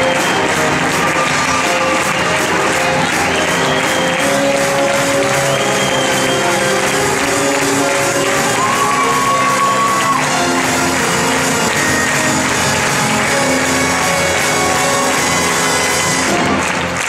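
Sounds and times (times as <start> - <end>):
audience shouting: 5.2 - 16.8.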